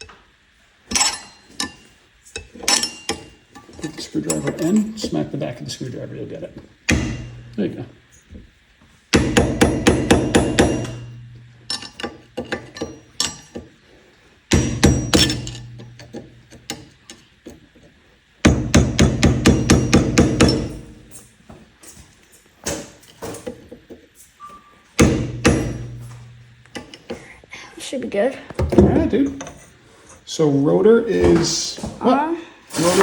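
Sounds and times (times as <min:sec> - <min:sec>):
rapid metallic hammering: 0:06.8 - 0:08.2, 0:09.1 - 0:13.6, 0:14.5 - 0:16.9, 0:18.4 - 0:21.2, 0:25.0 - 0:27.1.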